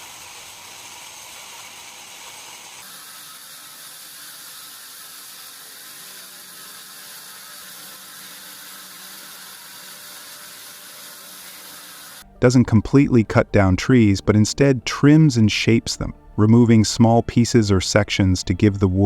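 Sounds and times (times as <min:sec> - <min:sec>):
steady hiss: 0:00.0 - 0:12.2.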